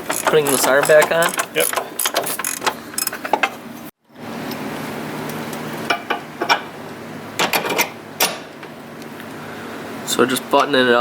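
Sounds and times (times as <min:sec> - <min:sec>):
metal tools tapping parts: 0:00.0 - 0:03.6.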